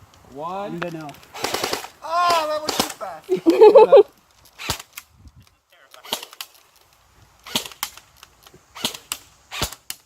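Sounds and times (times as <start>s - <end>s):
airsoft guns firing: 1.3s - 3.1s, 6.0s - 6.6s, 7.4s - 8.0s, 8.8s - 10.0s.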